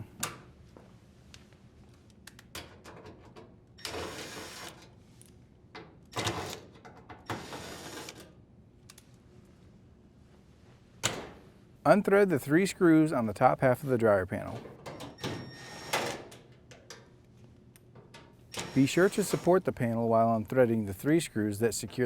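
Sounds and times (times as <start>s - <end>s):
cordless drill running: 18.5s - 19.5s.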